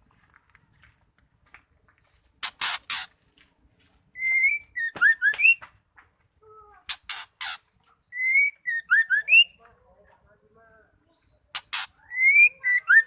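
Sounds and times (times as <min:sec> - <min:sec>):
bird harsh rasps: 0:02.4 - 0:03.2, 0:06.8 - 0:09.6, 0:11.4 - 0:13.0
bird whistled phrase: 0:08.1 - 0:09.6, 0:12.0 - 0:13.0.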